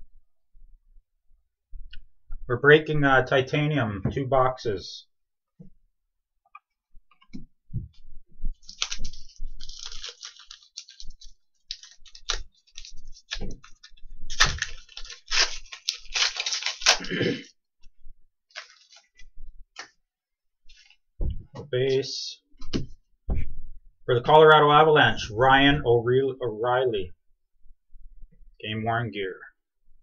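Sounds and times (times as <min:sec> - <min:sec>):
cards being flipped through: 0:08.6 - 0:17.1, 0:18.5 - 0:20.0.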